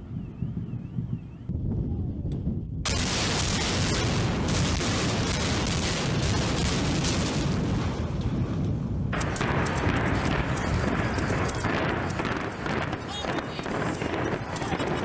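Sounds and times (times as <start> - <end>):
building collapsing rumble: 2.8 - 14.5.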